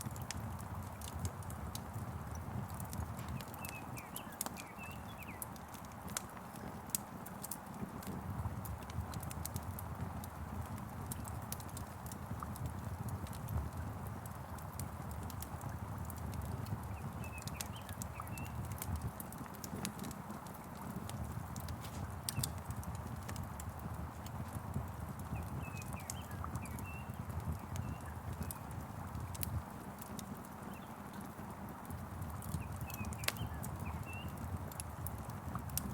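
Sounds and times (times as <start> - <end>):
wood fire crackling and popping: 0.0 - 35.9
faint bird chirps: 3.2 - 5.5, 16.8 - 18.8, 25.3 - 28.7, 32.5 - 34.4.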